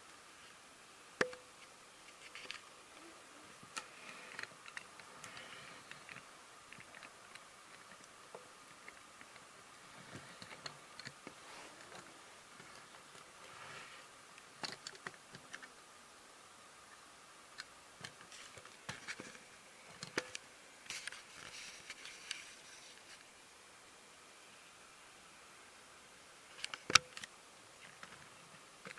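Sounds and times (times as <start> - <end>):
clicks and rustles of model vehicle: 2.1 - 2.7, 3.7 - 9.5, 10.1 - 13.3, 14.6 - 15.8, 17.6 - 23.3, 26.5 - 28.9.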